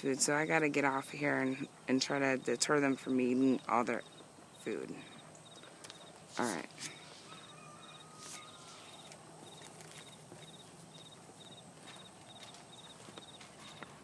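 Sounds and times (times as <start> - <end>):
insect chirping trill: 3.5 - 4.3, 5.1 - 6.1, 6.9 - 13.9.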